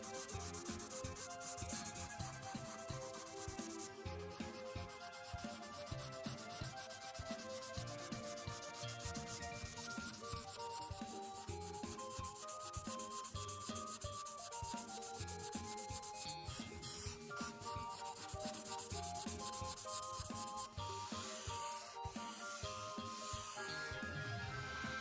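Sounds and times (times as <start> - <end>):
marker scribbling on paper: 0.0 - 23.6.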